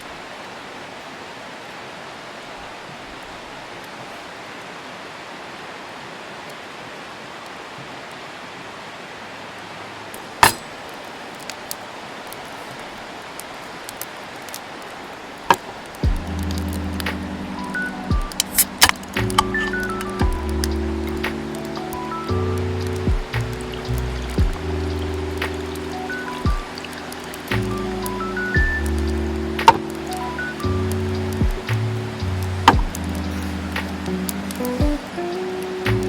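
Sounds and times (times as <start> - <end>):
steady outdoor hiss: 0.0 - 36.0
music: 16.0 - 36.0.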